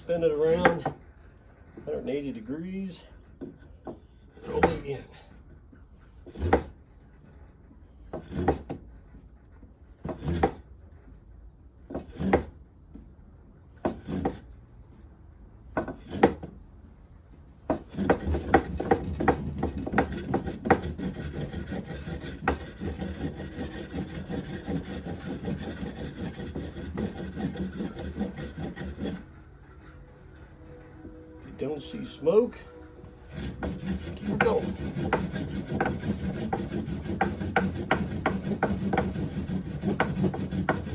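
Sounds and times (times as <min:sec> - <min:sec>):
board rolling strokes: 0:05.7 - 0:40.9
fast back-and-forth rubbing: 0:17.7 - 0:30.5, 0:32.8 - 0:40.9.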